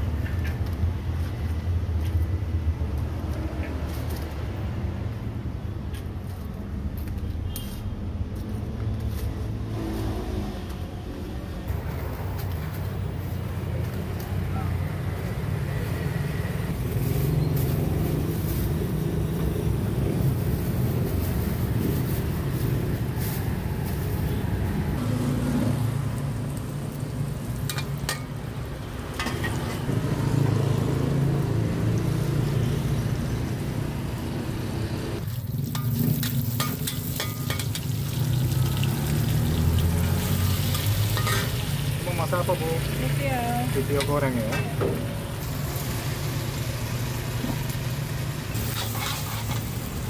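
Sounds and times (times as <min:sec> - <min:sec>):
engines and traffic rumble: 0:00.0 - 0:50.0
wok sizzling: 0:14.9 - 0:50.0.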